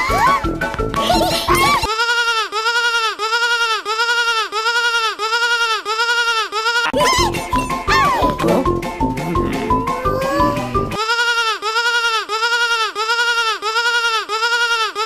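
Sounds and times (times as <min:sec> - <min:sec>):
cartoon music: 0:00.0 - 0:01.9, 0:06.9 - 0:11.0.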